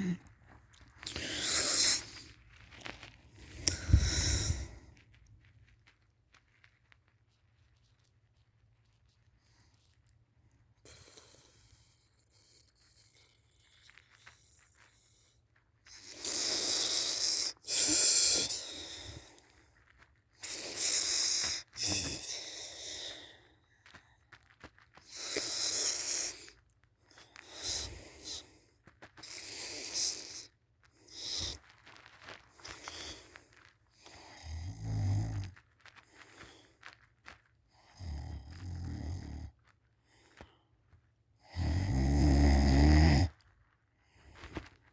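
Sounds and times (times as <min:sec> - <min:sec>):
person snoring loudly: 0:41.6 - 0:43.3.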